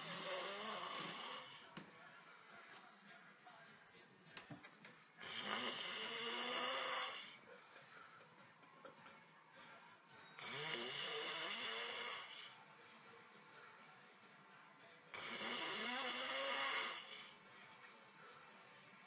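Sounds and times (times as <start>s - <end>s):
person snoring: 0.0s - 1.8s, 5.2s - 7.4s, 10.4s - 12.6s, 15.1s - 18.6s.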